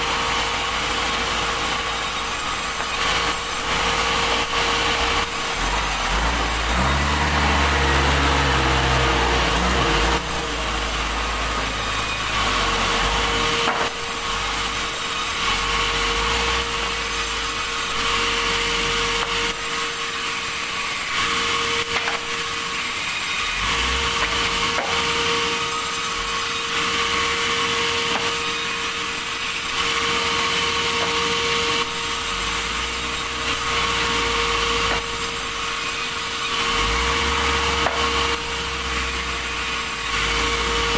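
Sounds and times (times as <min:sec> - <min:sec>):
machine hum: 0:00.0 - 0:20.2
saw blade rasping through wood: 0:01.8 - 0:40.9
heavy low rumble: 0:05.0 - 0:13.5.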